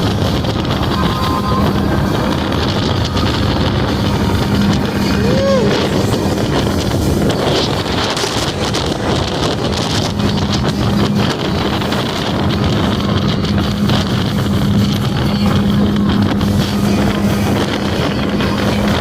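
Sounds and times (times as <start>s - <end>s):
motorboat engine humming: 0.0s - 19.0s
wind on microphone: 0.0s - 19.0s.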